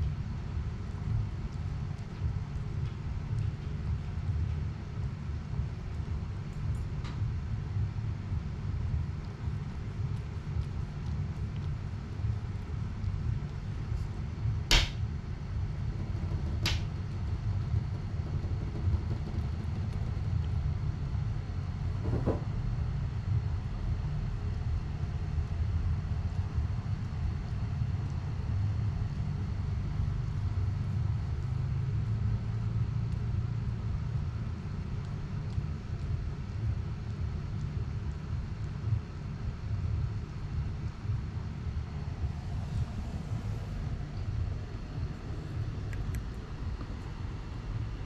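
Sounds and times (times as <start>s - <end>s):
steady low rumble: 0.0s - 48.0s.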